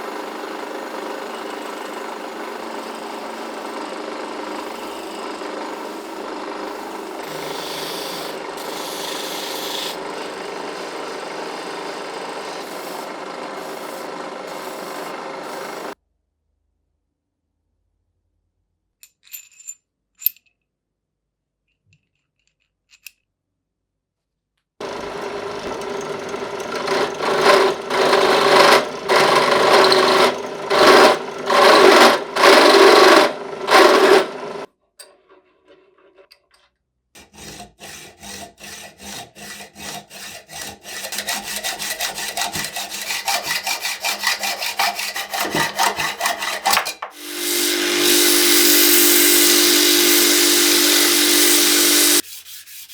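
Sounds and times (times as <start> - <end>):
pulsing abrasive tool humming: 0.0 - 16.0, 24.8 - 34.7, 41.0 - 52.2
quick rubbing strokes on metal: 41.4 - 52.9.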